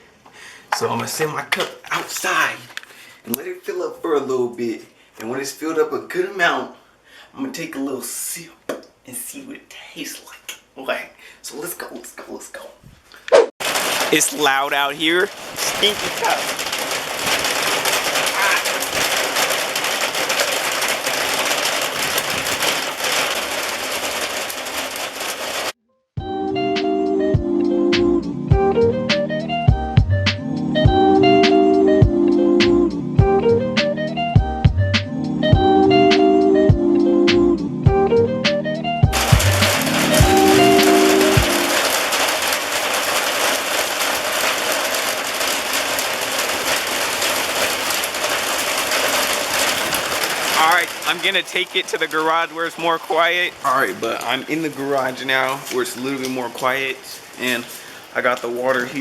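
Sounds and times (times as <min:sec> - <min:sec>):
heavy rain on hard surfaces: 0:13.6 - 0:25.8, 0:39.1 - 0:59.0.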